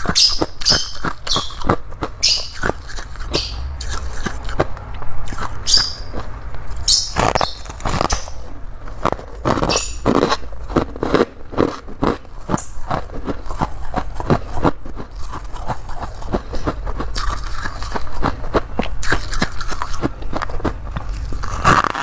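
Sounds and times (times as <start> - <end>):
chewing icy frost crunches: 9.0 - 22.0.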